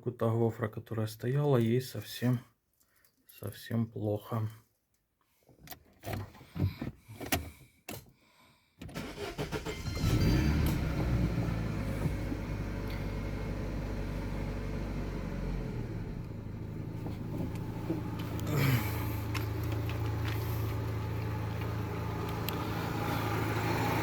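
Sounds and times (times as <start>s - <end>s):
car engine idling: 9.0s - 24.0s.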